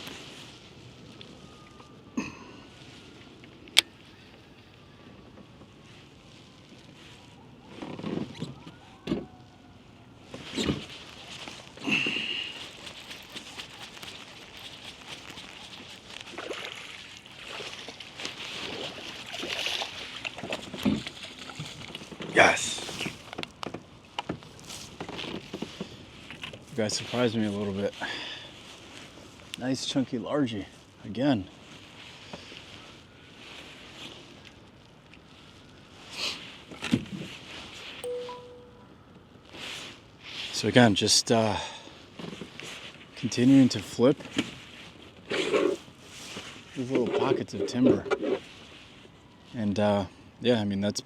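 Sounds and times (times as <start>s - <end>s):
scuffing rustle: 10.3s - 20.2s
water sloshing and splashing: 10.3s - 23.4s.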